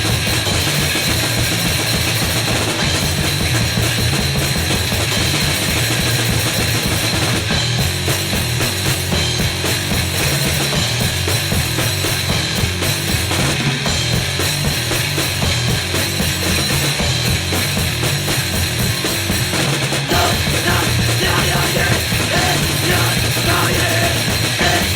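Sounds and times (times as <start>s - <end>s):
fast pounding drums: 0.0s - 24.9s
distorted noise wall: 20.1s - 24.9s.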